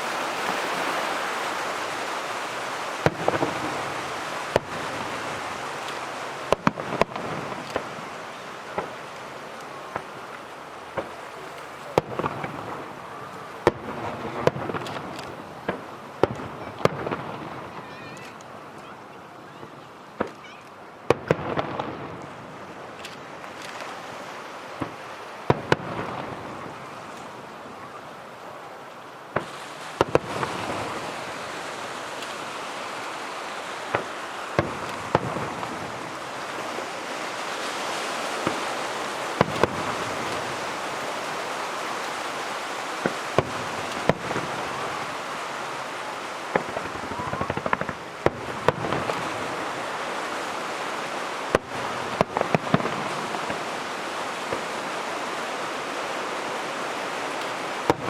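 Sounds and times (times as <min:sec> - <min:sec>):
continuous hiss: 0:00.0 - 0:58.0
firework shells bursting: 0:00.1 - 0:13.0, 0:13.6 - 0:17.6, 0:29.3 - 0:54.9.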